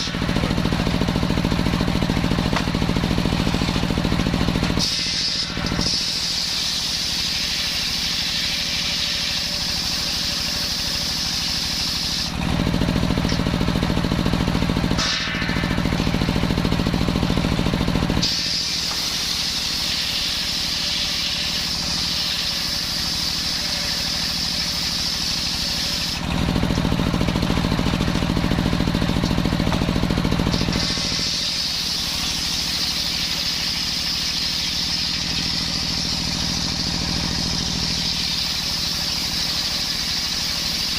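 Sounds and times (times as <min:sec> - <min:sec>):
deep engine hum: 0:00.0 - 0:40.3
saw hissing through wood: 0:02.2 - 0:12.4, 0:14.9 - 0:26.3, 0:30.4 - 0:40.9.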